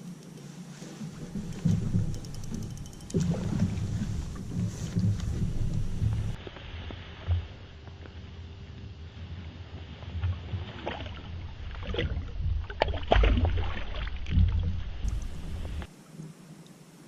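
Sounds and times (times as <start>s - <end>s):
water splashing around kayak: 0.0s - 8.4s, 9.2s - 16.4s
low rumble: 1.1s - 6.4s.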